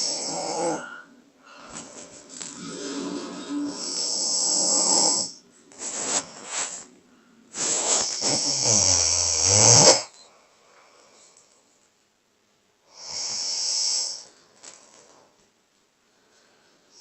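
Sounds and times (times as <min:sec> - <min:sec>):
person snoring: 0:00.0 - 0:01.8, 0:02.4 - 0:05.4, 0:07.6 - 0:10.1, 0:12.9 - 0:14.3.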